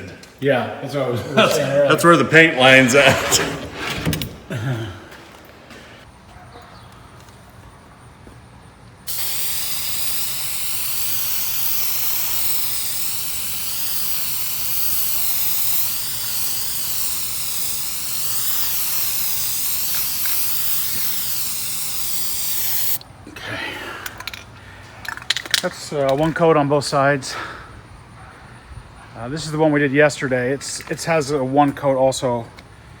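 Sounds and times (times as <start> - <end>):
paint spray hiss: 9.1 - 23.0.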